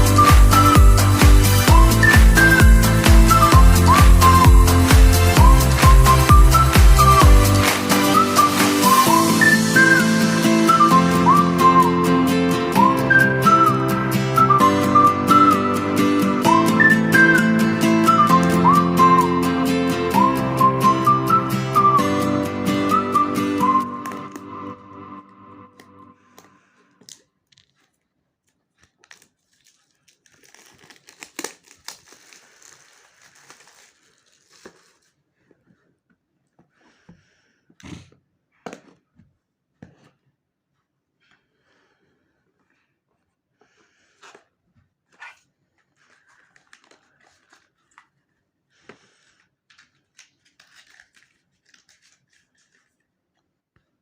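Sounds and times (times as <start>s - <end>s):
plastic packaging crinkling: 27.0s - 35.5s, 45.1s - 48.5s, 49.1s - 53.4s.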